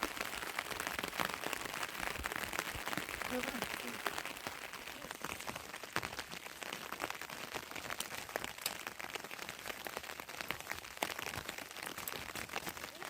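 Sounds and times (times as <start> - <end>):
heavy rain falling: 0.0 - 13.0.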